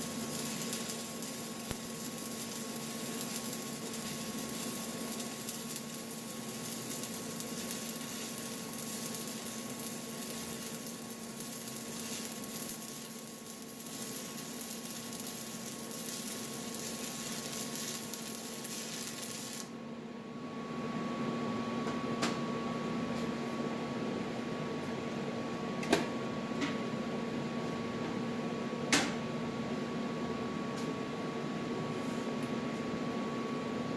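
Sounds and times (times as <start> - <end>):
welding arc crackling hiss: 0.0 - 19.8
welding machine hum: 0.0 - 19.8.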